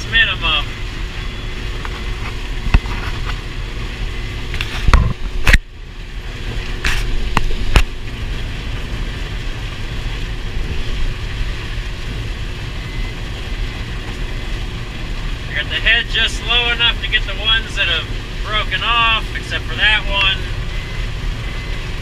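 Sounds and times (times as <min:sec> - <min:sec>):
combine harvester running: 0:00.0 - 0:22.0.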